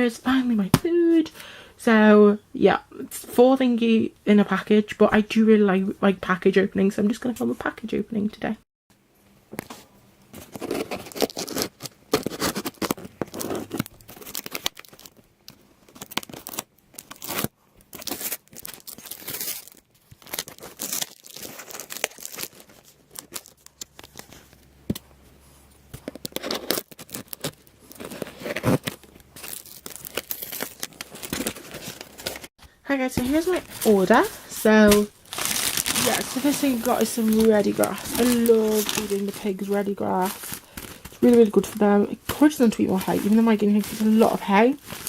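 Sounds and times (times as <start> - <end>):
packaging tearing and crinkling: 10.4 - 24.6, 25.9 - 32.5, 34.9 - 41.8, 42.9 - 45.0.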